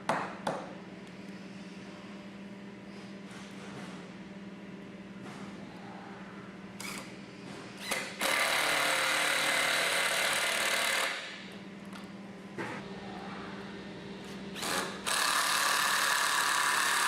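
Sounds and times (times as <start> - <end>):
steady low hum: 0.0 - 8.4, 10.1 - 15.8
power drill driving a screw: 7.8 - 11.2, 14.6 - 17.0.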